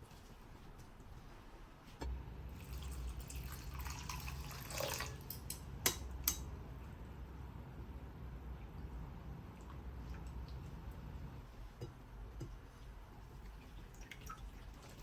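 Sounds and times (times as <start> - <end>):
water running and trickling: 2.6 - 5.4, 13.3 - 15.0.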